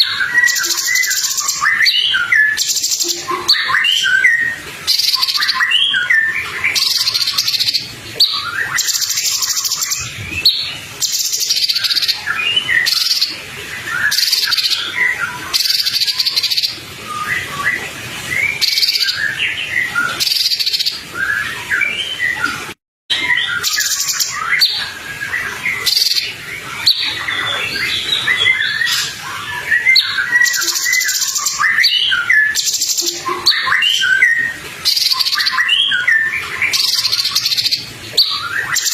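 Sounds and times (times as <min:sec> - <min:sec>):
birds chirping and trilling: 0:00.0 - 0:38.9.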